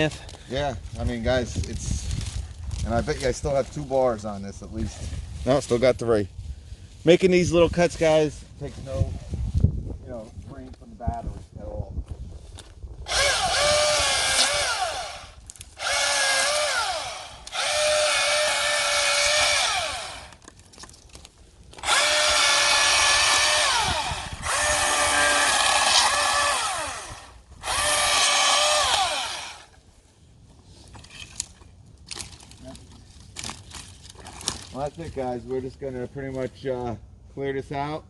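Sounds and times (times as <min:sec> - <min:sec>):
battery chainsaw cutting limbs: 0:13.1 - 0:20.4, 0:21.7 - 0:29.7.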